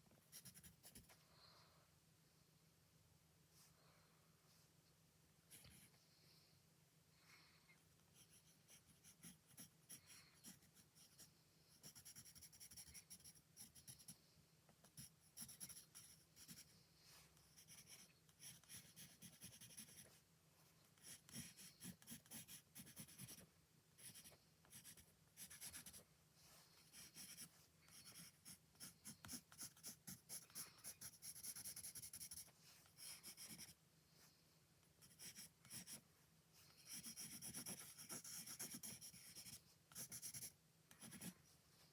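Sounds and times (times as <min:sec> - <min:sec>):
faint low hum: 0:00.0 - 0:41.9
drawing tool scratching paper: 0:08.2 - 0:14.2, 0:14.9 - 0:16.7, 0:17.6 - 0:20.1, 0:21.0 - 0:23.4, 0:24.0 - 0:26.0, 0:26.9 - 0:33.8, 0:35.0 - 0:36.0, 0:36.8 - 0:41.4.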